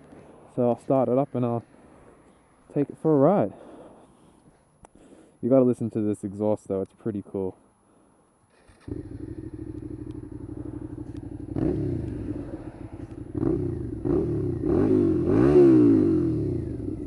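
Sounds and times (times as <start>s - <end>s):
motorcycle engine starting: 8.5s - 17.0s
motorcycle engine idling and revving: 8.6s - 17.0s.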